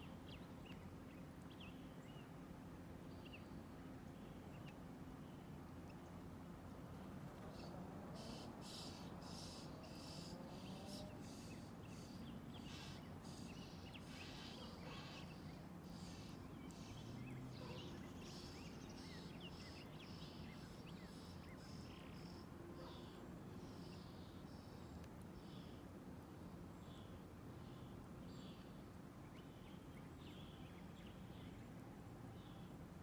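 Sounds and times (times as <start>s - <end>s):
birds chirping: 7.5s - 23.1s.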